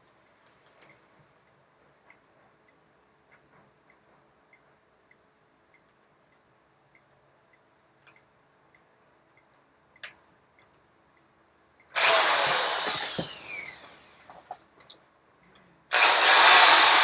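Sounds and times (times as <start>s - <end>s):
click: 0.0s - 12.0s
electric drill whining: 12.0s - 14.2s, 15.9s - 17.0s.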